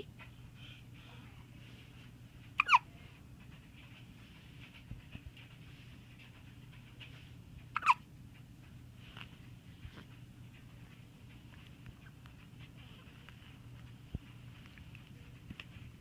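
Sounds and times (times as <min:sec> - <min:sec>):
squeaky hiccups: 0:02.6 - 0:02.9, 0:07.7 - 0:08.1.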